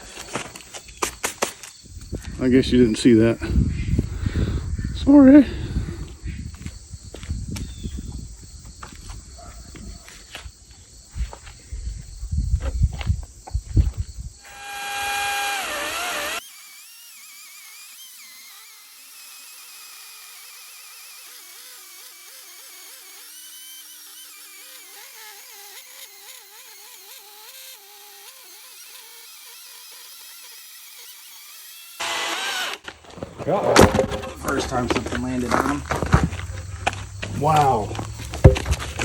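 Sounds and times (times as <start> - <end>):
electric chainsaw whining: 14.4 - 33.2, 33.8 - 39.0.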